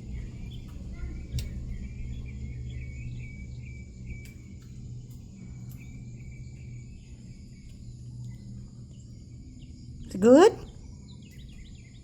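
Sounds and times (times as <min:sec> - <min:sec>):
low steady hum: 0:00.0 - 0:09.1
crickets chirping: 0:00.0 - 0:12.0.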